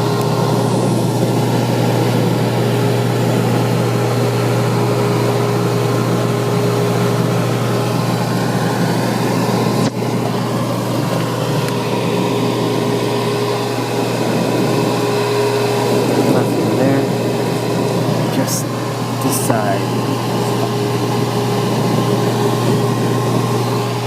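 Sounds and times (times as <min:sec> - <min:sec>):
dishwasher humming: 0:00.0 - 0:24.0.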